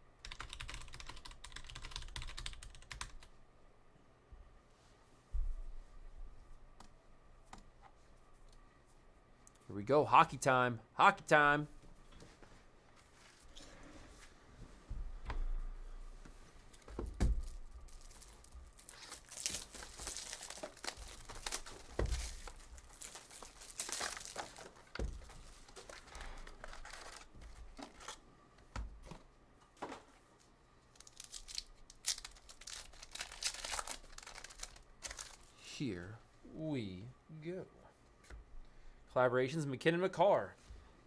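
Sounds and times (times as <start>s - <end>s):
card pack wrappers tearing: 17.4s - 28.2s, 30.9s - 35.6s.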